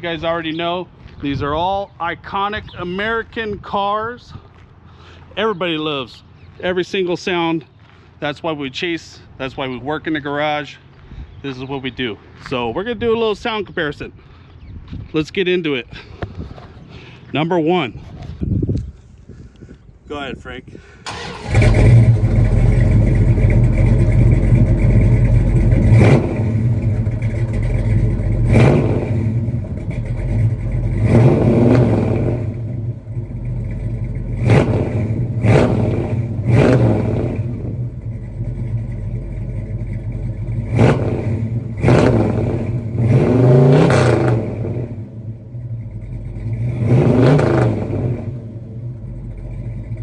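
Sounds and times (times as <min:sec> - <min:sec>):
vvee engine idling and revving: 0:21.1 - 0:50.0.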